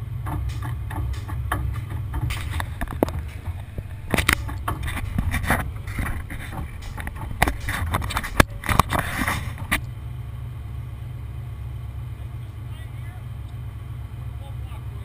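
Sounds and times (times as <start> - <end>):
knocks and clanks: 0.0 - 9.9
heavy truck engine running: 0.0 - 15.0.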